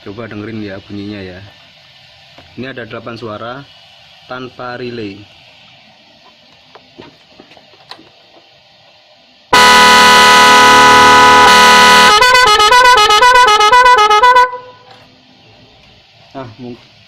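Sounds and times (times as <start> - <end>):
loud electronic motorcycle horn: 9.5 - 14.9.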